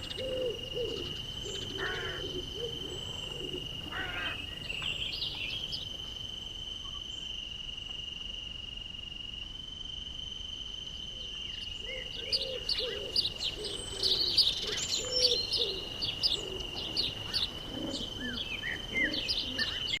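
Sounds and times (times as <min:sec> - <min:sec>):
low bird calls: 0:00.0 - 0:05.9, 0:11.5 - 0:20.0
songbirds chirping: 0:00.0 - 0:09.3, 0:11.0 - 0:20.0.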